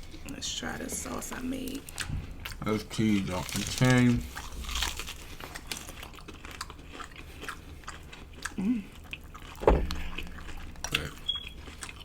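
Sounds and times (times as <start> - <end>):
person chewing crunchy food: 1.9 - 12.0
loud thump: 9.6 - 10.4.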